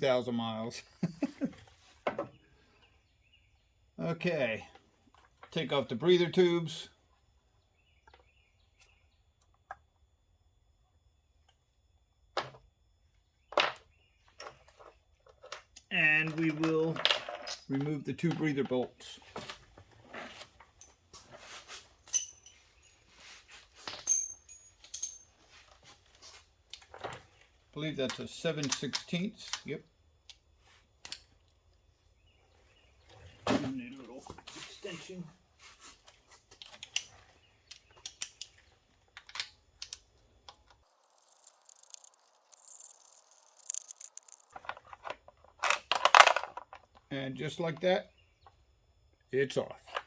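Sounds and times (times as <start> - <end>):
ratchet wrench clicking: 40.9 - 44.5.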